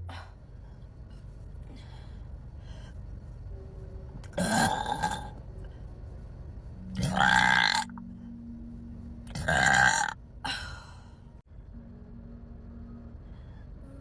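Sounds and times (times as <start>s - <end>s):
woman burping: 4.4s - 5.3s, 9.3s - 10.7s.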